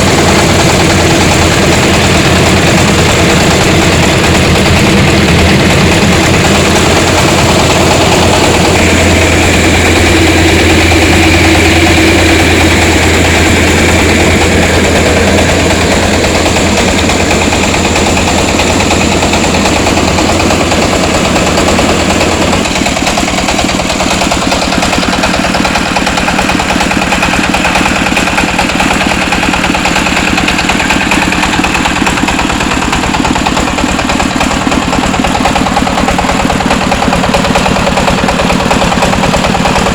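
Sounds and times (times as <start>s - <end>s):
rice huller engine running: 0.0s - 39.9s.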